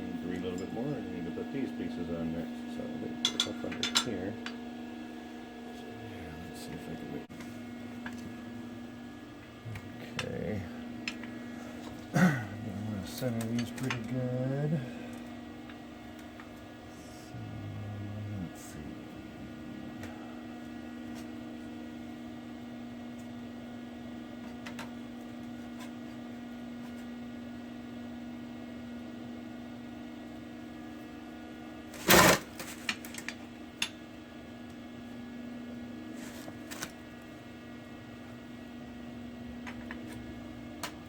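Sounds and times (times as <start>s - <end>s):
electrical hum: 0.0s - 41.0s.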